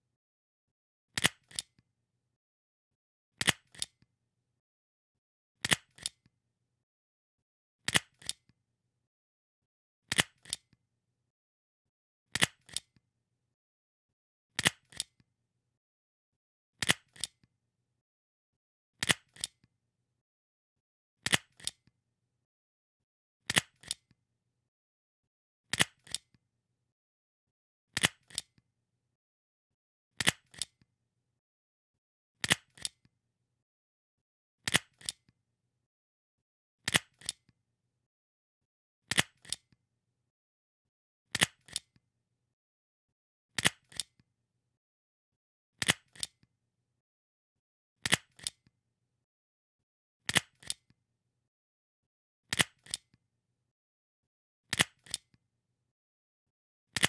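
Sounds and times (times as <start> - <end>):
stapler clicking: 1.2 - 1.7, 41.4 - 41.9, 48.1 - 48.6, 52.5 - 53.0, 54.7 - 55.2.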